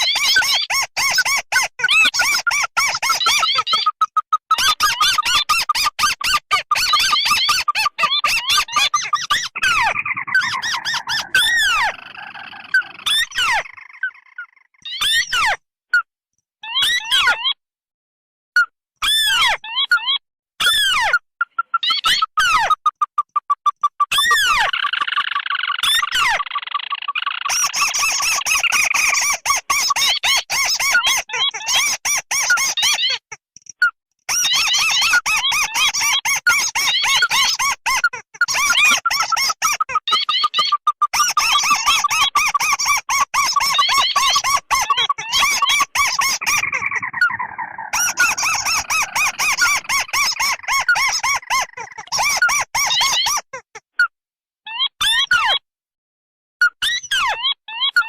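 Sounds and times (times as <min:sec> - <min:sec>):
crake squeaky calls: 0:00.0 - 0:17.6, 0:19.0 - 0:54.1
crake chattering trill: 0:06.6 - 0:14.0, 0:38.1 - 0:52.4
harsh rasping bird notes: 0:06.8 - 0:14.4, 0:41.2 - 0:52.8.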